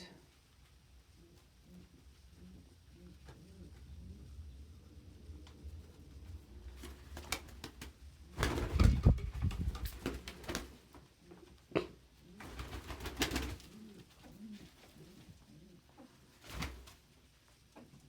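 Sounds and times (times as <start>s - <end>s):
pigeons cooing: 1.0s - 9.0s, 11.1s - 16.8s.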